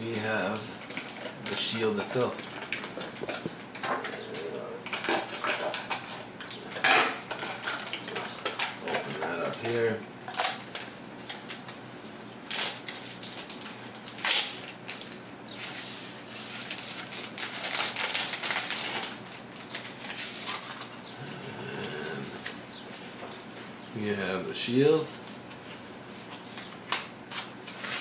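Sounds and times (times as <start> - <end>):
packaging rustling and crinkling: 0.1 - 4.2, 4.8 - 21.0, 26.8 - 28.0.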